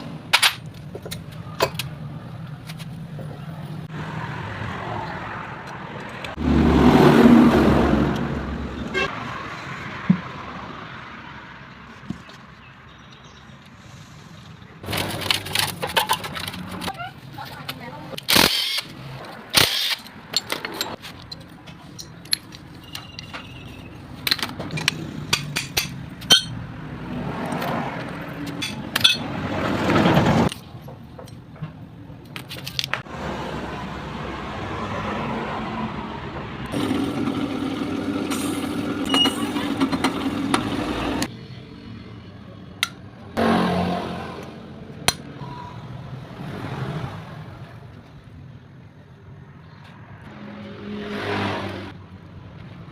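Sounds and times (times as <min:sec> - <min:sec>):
hand tools clinking on metal: 0:24.3 - 0:26.6
vehicle engine running: 0:36.7 - 0:41.3.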